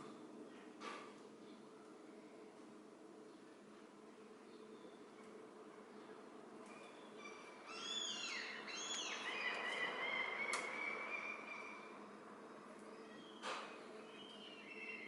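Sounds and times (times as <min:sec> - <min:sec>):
birds chirping: 0:04.4 - 0:15.0.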